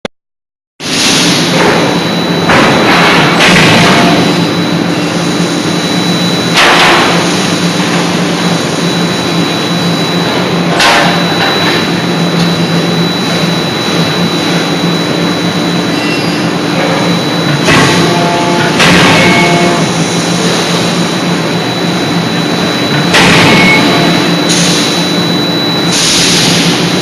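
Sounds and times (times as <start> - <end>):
heavy hammer blows: 0.8 - 5.2, 16.0 - 20.9, 22.8 - 25.1
forging hammer machine hum: 0.8 - 27.0.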